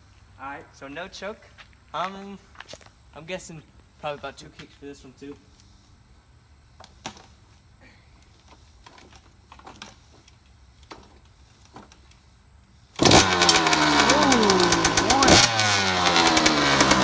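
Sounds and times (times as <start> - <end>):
two-stroke motorcycle engine revving: 13.0 - 17.0.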